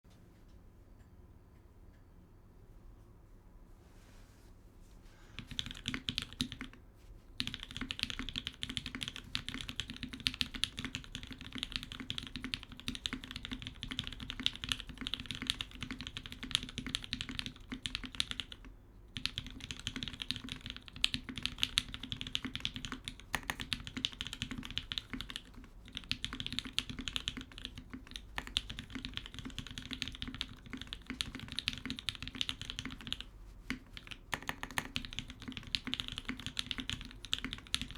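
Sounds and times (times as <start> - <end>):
mechanical keyboard typing: 5.4 - 6.8, 7.4 - 37.9.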